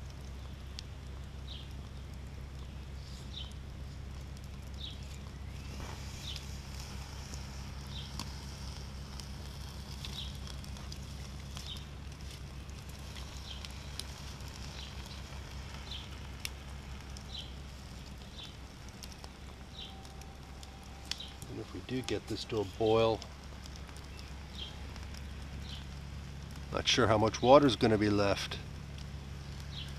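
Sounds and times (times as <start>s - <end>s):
campfire crackling and popping: 0.0s - 29.9s
bird chirping: 4.7s - 8.3s, 10.0s - 10.4s, 17.2s - 17.6s, 19.2s - 20.2s, 20.9s - 22.9s, 24.0s - 25.9s.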